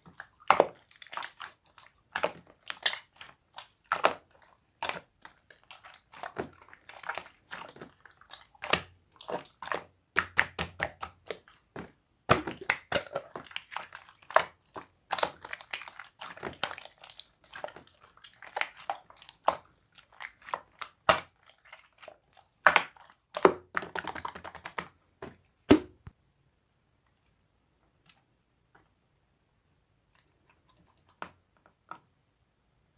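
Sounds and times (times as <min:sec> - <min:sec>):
slime squishing and crackling: 0:00.0 - 0:24.9.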